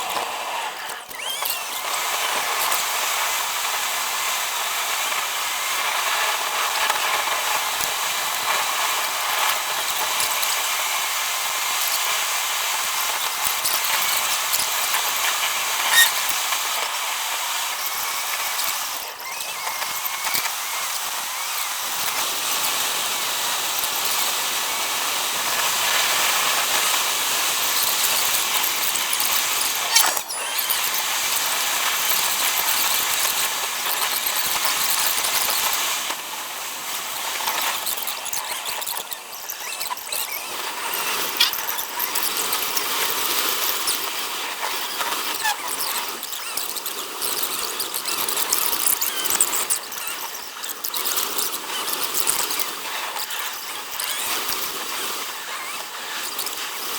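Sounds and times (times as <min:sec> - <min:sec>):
sharp click: 0:27.7 - 0:31.0.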